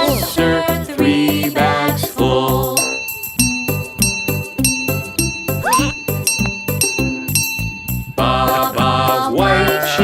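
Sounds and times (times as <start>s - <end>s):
children's song backing music: 0.0s - 4.4s, 8.1s - 10.0s
bell-like chime tones: 2.7s - 8.8s.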